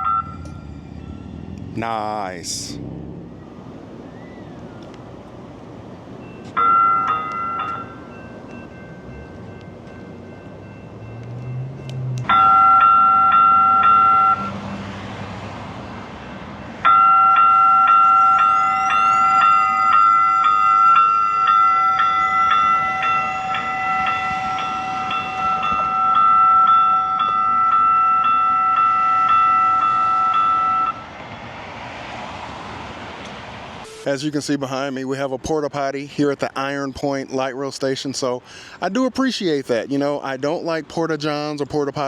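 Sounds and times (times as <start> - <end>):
rail warning bell ringing: 0.0 - 2.2, 6.2 - 14.6, 16.8 - 31.2, 33.8 - 34.8.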